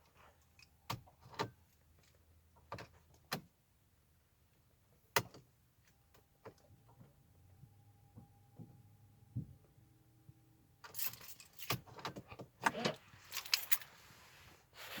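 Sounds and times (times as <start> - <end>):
faint steady tone: 6.0 - 11.7.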